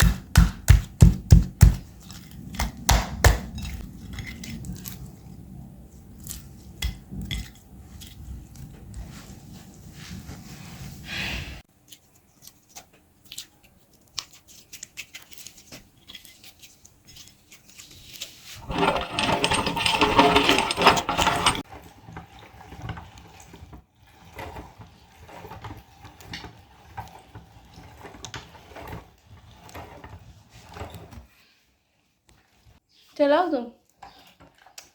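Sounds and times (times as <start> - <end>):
meat grinder churning slime: 0.0 - 3.0, 21.2 - 31.2
metal clicks and scraping: 18.6 - 21.6.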